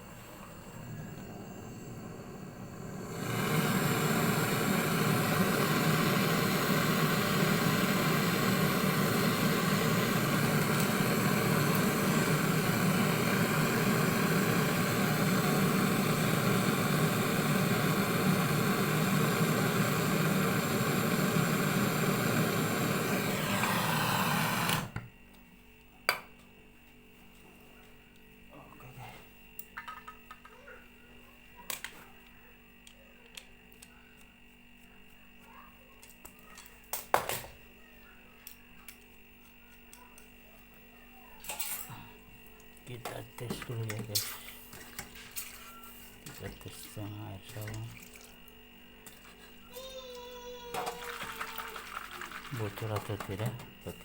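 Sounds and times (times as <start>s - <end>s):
torch flame roaring: 0.0s - 25.0s.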